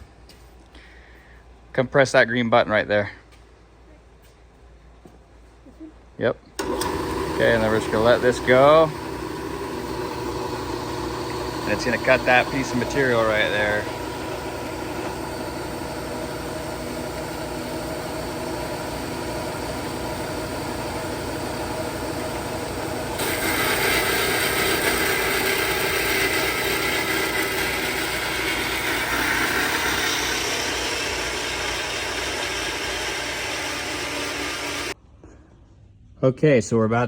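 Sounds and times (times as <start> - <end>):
saw blade cutting metal: 6.6 - 15.4, 23.2 - 35.0
band saw motor running: 6.6 - 35.0.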